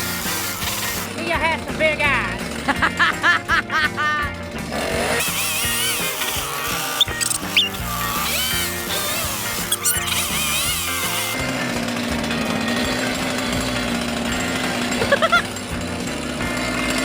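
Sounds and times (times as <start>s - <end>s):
chainsaw cutting pumpkin: 0.0s - 1.2s, 4.7s - 17.0s.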